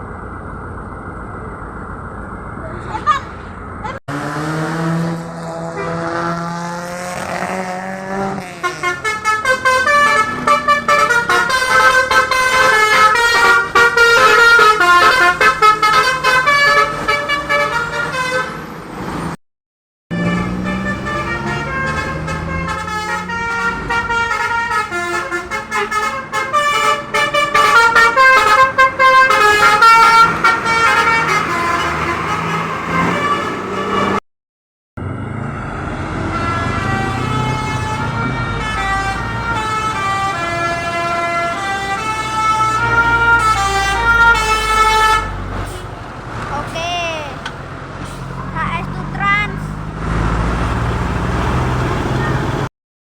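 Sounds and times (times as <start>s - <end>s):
multi-tone musical bus horn: 4.8s - 18.8s, 20.1s - 34.2s, 36.0s - 46.0s.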